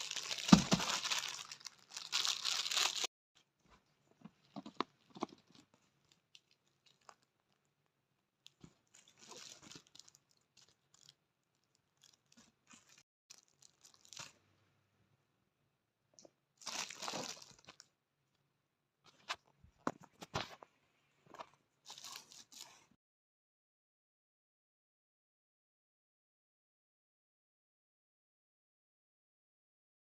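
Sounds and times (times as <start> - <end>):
plastic packaging tearing: 0.0 - 3.1, 16.6 - 17.8, 21.9 - 22.8.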